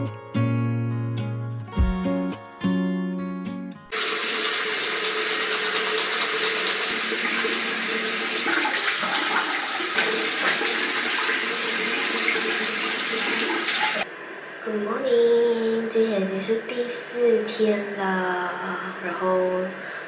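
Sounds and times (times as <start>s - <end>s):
water rushing: 3.9s - 14.1s.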